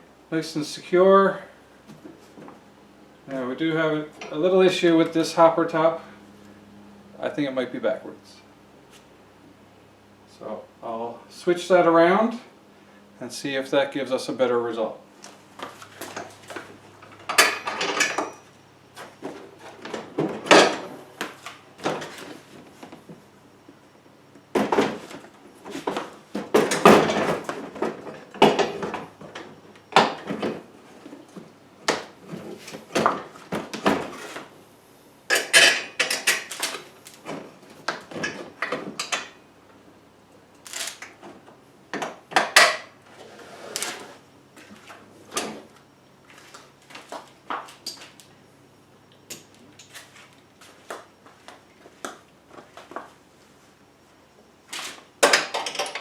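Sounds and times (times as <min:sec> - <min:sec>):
plastic hopper knocks and clunks: 0:25.9 - 0:29.4.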